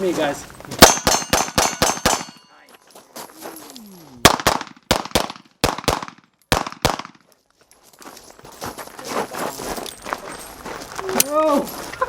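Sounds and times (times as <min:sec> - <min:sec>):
pistol shots: 0:00.8 - 0:02.5, 0:04.2 - 0:07.2.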